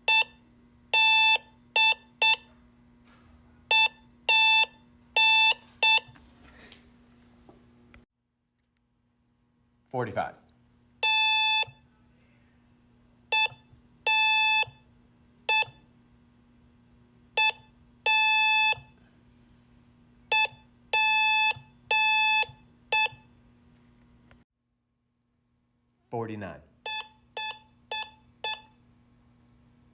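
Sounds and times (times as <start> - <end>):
morse code beep tone: 0.0 - 2.5, 3.7 - 6.1, 11.0 - 11.8, 13.3 - 14.8, 15.5 - 15.8, 17.4 - 19.0, 20.3 - 23.3, 26.8 - 28.8.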